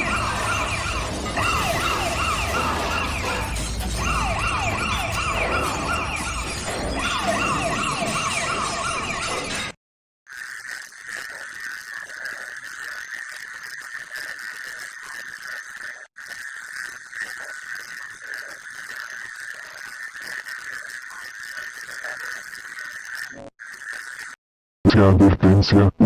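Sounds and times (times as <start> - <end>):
emergency alert data tones: 0.0 - 9.8.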